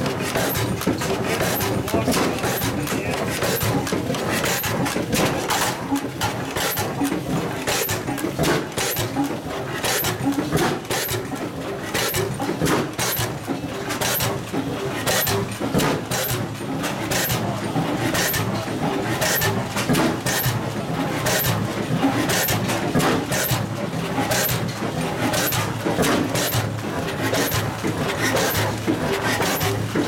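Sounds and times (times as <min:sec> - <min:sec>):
stationary engine beating and clattering: 0:00.0 - 0:30.0.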